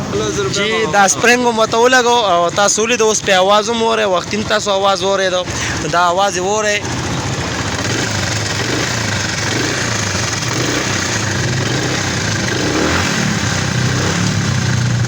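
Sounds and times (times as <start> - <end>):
motorcycle engine running: 0.0 - 15.0
clattering timing chain: 6.8 - 15.0.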